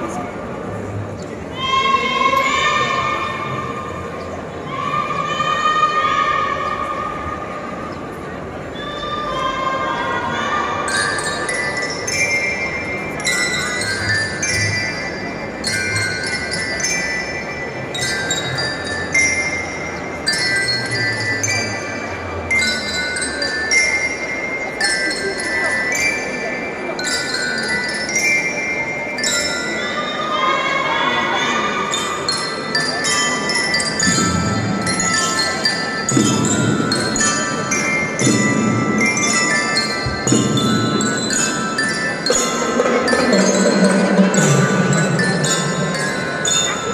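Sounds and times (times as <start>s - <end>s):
glockenspiel melody: 10.8s - 30.9s, 31.6s - 46.9s
bell lyre struck with mallets: 32.1s - 46.9s.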